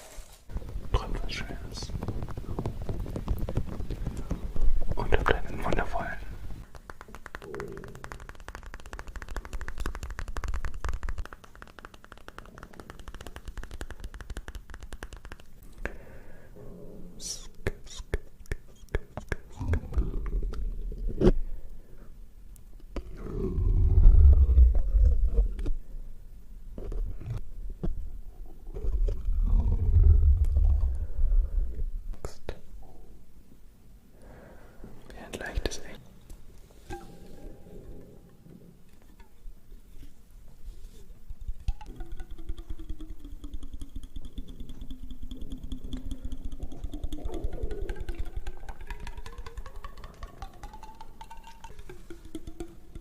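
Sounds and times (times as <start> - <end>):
stomach growling: 0.5 - 11.3, 18.7 - 21.7, 22.9 - 25.8, 28.3 - 32.2, 36.9 - 39.2, 41.3 - 53.0.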